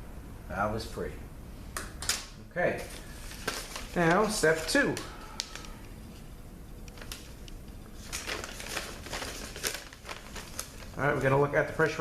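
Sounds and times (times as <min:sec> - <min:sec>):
rustling: 0:08.0 - 0:11.3.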